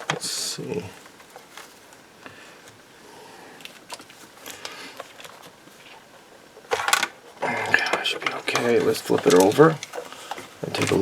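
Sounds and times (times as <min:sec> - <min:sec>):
loud plastic clack: 0:06.6 - 0:07.2.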